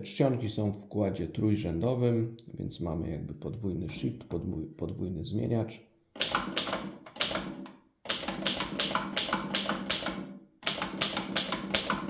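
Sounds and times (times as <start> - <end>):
typewriter keystrokes: 6.2 - 12.0.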